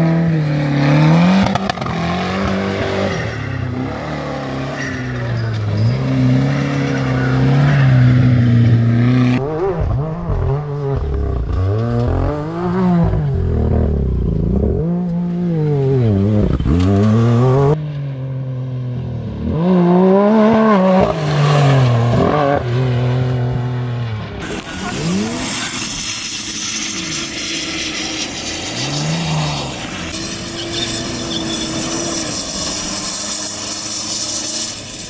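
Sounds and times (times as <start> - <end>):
race vehicle engines revving: 0.0 - 35.0.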